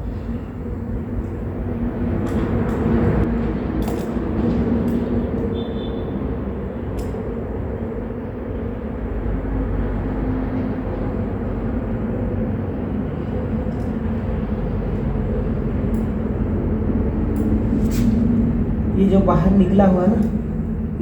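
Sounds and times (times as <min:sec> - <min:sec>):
faint hum: 0:05.5 - 0:21.0.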